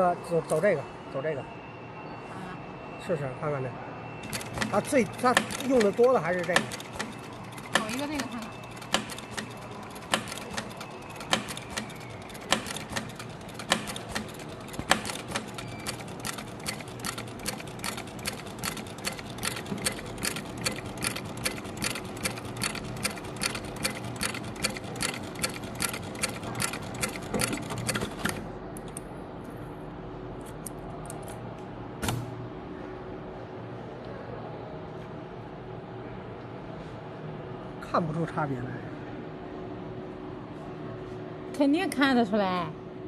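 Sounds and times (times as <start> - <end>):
sewing machine stitch knocks: 4.3 - 28.4.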